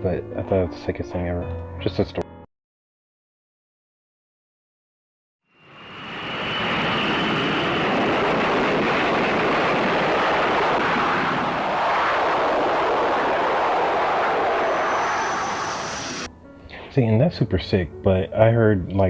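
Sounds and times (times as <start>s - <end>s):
jet engines roaring with whine: 5.5s - 16.3s.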